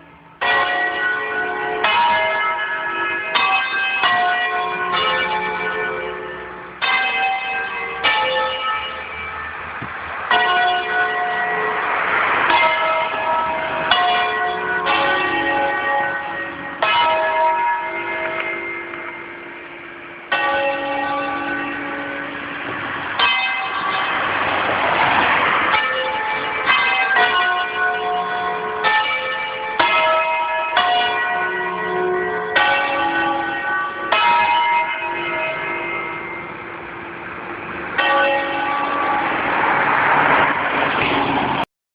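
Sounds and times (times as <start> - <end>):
church bells ringing in a peal: 0.0 - 41.0
broad rushing noise: 9.0 - 17.4, 21.6 - 27.0, 35.9 - 41.7.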